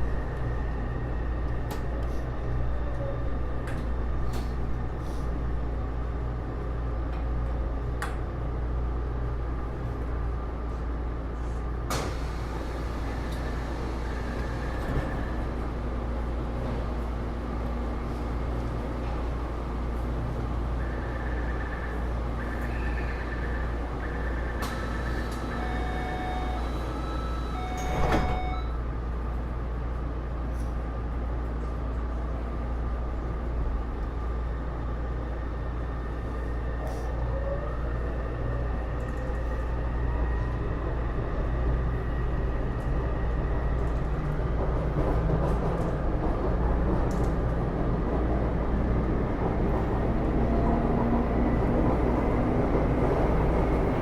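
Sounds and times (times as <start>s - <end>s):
train low rumble: 0.0s - 54.0s
traction inverter whine: 20.6s - 28.8s
short electronic beeps: 25.1s - 28.8s.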